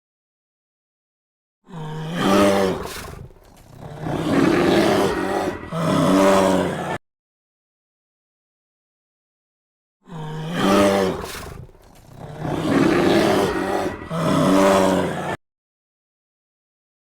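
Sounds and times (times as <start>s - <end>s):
large animal crying: 1.7s - 7.0s, 10.1s - 15.4s.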